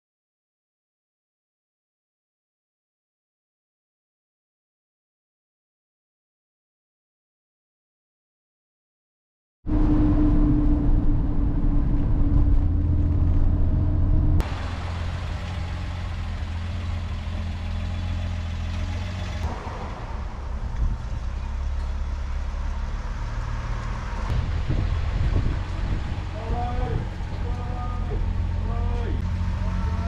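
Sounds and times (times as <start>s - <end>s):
car engine drone: 9.7s - 30.0s
road noise: 9.7s - 30.0s.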